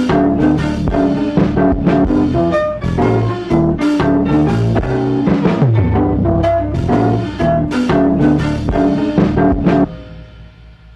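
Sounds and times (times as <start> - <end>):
drum kit: 0.0 - 10.9
low bass line: 0.9 - 9.9
melodic notes: 4.4 - 8.6.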